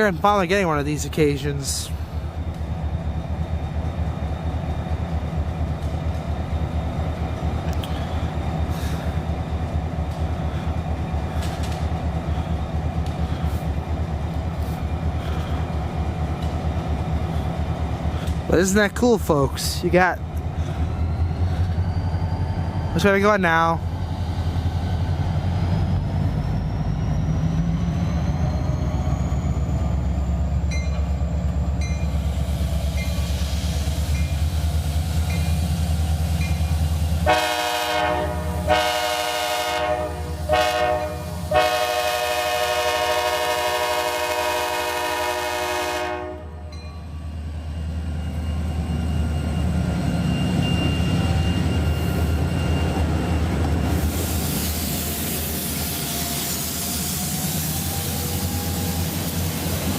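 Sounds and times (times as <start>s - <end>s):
diesel locomotive rumble: 0.0s - 59.9s
locomotive air horn blasts: 37.2s - 46.7s.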